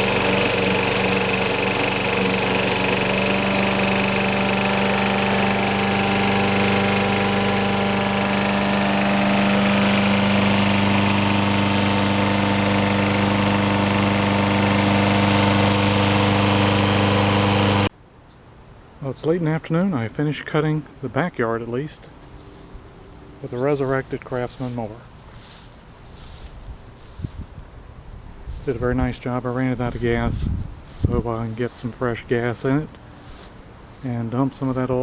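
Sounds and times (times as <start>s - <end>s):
lawn mower engine running: 0.0s - 17.9s, 29.7s - 35.0s.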